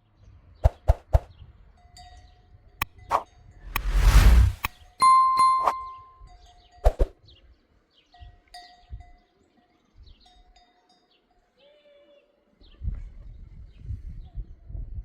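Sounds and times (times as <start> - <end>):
low rumbling noise: 3.6 - 4.7
livestock bells ringing: 5.0 - 6.1.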